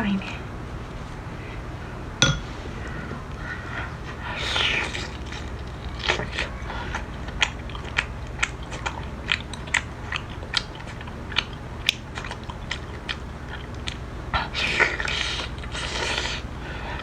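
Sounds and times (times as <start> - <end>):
chewing crunchy food: 2.8 - 17.0.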